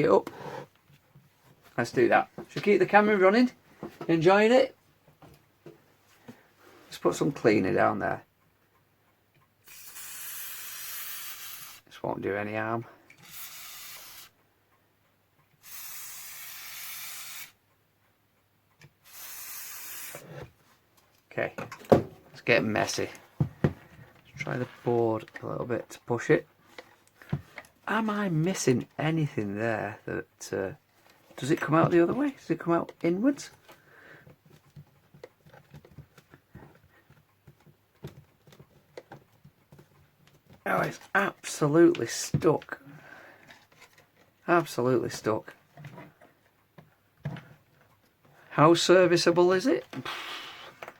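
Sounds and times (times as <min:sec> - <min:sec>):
aerosol spray hissing: 0:15.6 - 0:17.5, 0:19.0 - 0:20.2
faint knocks and clicks: 0:31.0 - 0:40.7.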